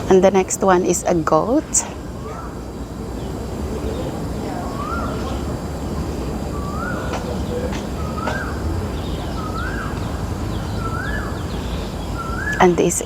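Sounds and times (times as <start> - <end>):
low background rumble: 0.0 - 13.0
bird whistled call: 4.6 - 5.6, 6.2 - 12.8.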